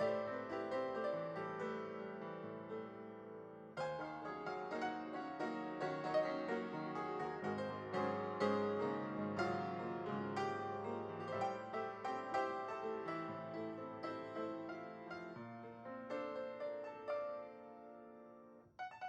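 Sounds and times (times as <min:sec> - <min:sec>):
piano music: 0:00.0 - 0:19.0.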